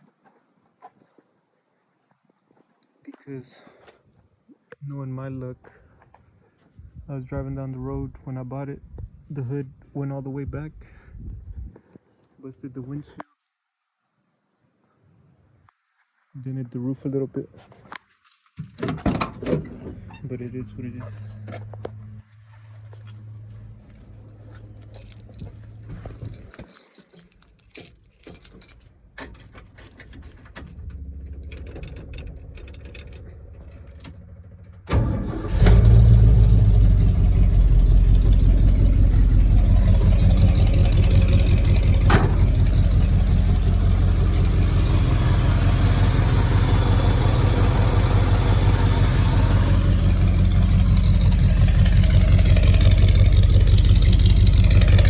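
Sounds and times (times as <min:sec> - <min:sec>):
keys jangling: 0:23.4 - 0:34.2
truck engine running steadily: 0:37.5 - 0:55.0.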